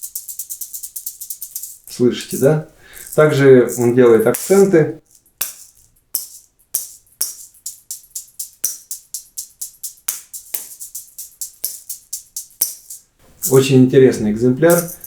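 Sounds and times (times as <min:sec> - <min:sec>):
finger shaker strokes: 0:00.0 - 0:13.7, 0:14.7 - 0:15.0.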